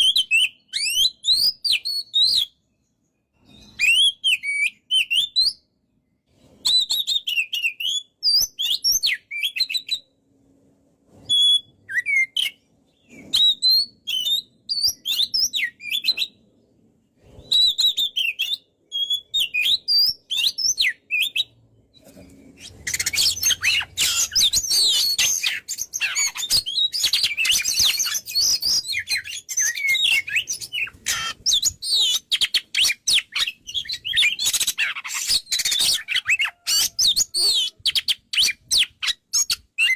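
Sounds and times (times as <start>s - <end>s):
bird singing whistles and chirps: 0.0s - 2.8s, 3.4s - 5.7s, 6.4s - 10.1s, 11.2s - 16.4s, 17.3s - 39.9s.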